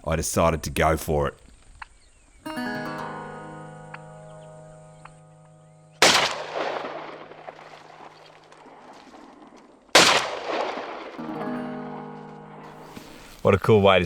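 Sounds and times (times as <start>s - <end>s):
gunshots with rolling echo: 6.0s - 12.9s.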